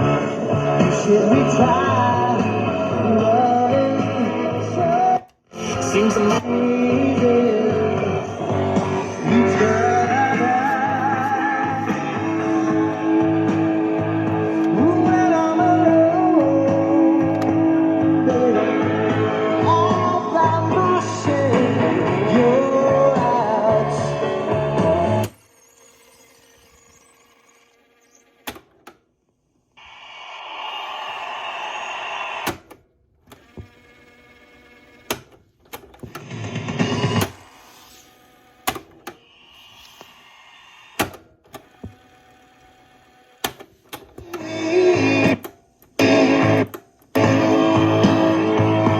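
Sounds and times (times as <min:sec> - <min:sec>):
rock song through small speakers: 0:00.0 - 0:25.3, 0:44.3 - 0:45.4, 0:46.0 - 0:48.9
mechanical button clicks and clunks: 0:17.2 - 0:17.6, 0:28.4 - 0:29.0, 0:34.7 - 0:37.5, 0:38.5 - 0:39.2, 0:43.4 - 0:44.6.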